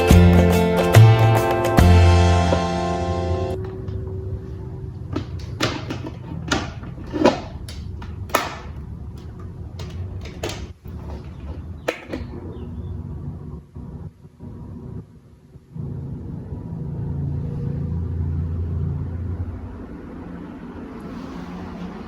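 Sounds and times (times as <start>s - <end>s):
fan parts clicking and knocking: 5.0s - 12.6s.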